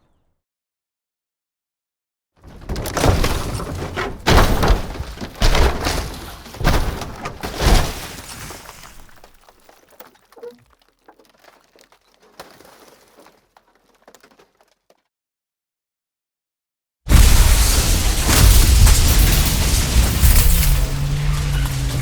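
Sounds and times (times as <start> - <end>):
car tumbling with metal impacts: 2.4 - 14.7, 17.1 - 22.0
debris and glass rattling: 2.4 - 14.8, 17.1 - 22.0.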